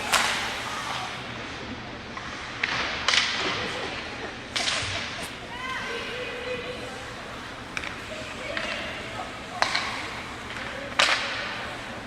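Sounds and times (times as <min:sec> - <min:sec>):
puck striking boards: 0:00.0 - 0:01.0, 0:02.2 - 0:03.6, 0:07.7 - 0:12.0
hockey stick hitting puck: 0:00.0 - 0:01.1, 0:02.2 - 0:03.5, 0:07.7 - 0:12.0
rink and crowd noise: 0:00.0 - 0:12.0.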